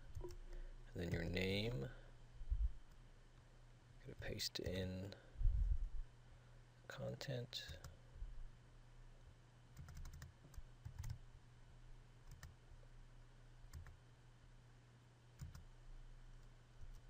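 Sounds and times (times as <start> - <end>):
low steady hum: 0.0 - 17.0
computer keyboard clicks: 9.8 - 11.2, 12.3 - 12.6, 13.7 - 14.0, 15.4 - 15.6.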